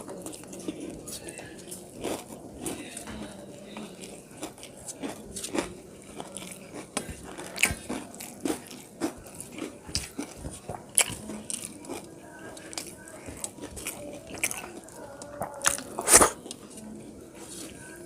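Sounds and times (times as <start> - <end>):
person chewing food: 0.0 - 18.0
mouth smacks: 15.4 - 16.6
wet mouth clicks: 15.6 - 16.4.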